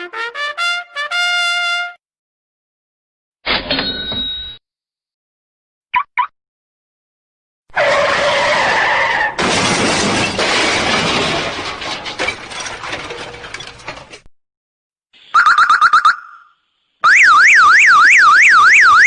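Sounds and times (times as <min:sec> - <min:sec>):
tyre screech: 0:07.7 - 0:09.5
glass shattering and debris crash: 0:09.1 - 0:14.3.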